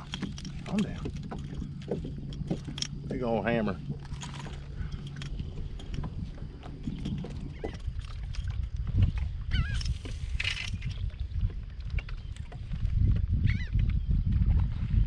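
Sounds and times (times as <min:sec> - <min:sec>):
low rumbling: 0:00.0 - 0:15.0
wavering bird calls: 0:09.5 - 0:09.9.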